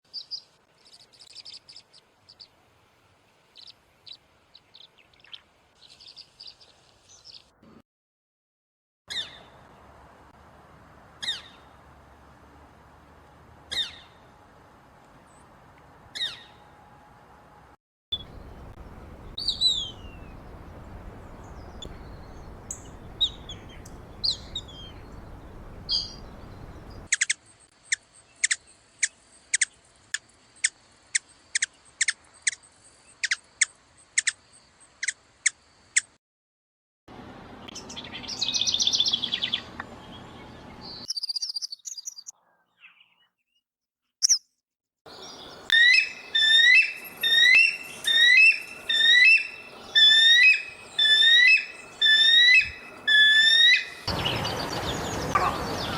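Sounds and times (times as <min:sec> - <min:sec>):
birds chirping: 0:03.5 - 0:07.6, 0:18.2 - 0:36.1, 0:37.5 - 0:43.6, 0:44.2 - 0:44.5, 0:45.1 - 0:55.9
bird trill: 0:18.2 - 0:29.7, 0:37.7 - 0:43.1, 0:44.2 - 0:44.5, 0:45.1 - 0:55.9
rising bird whistles: 0:45.7 - 0:54.4.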